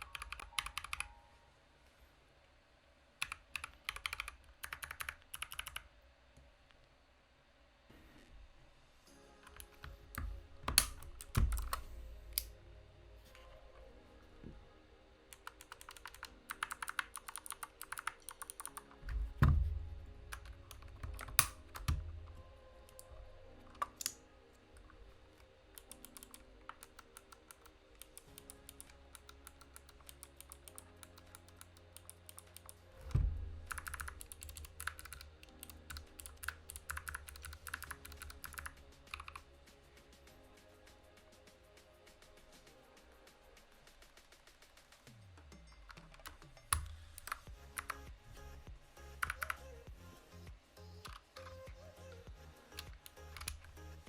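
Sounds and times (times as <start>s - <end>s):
mechanical keyboard clicky typing: 0.0s - 1.2s, 3.2s - 5.9s, 9.5s - 11.8s, 15.3s - 19.5s, 20.3s - 22.1s, 25.7s - 32.8s, 33.6s - 39.4s, 45.9s - 48.1s, 49.2s - 49.7s, 52.8s - 53.9s
background music: 0.0s - 1.7s, 8.9s - 54.0s
low thumps: 19.0s - 22.5s, 33.0s - 33.8s.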